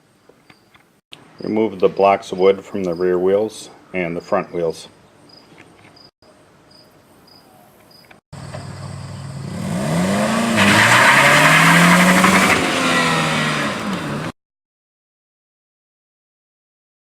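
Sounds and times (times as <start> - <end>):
crickets chirping: 5.3 - 9.6
road and tyre noise: 7.8 - 14.4
car engine revving: 8.4 - 14.3.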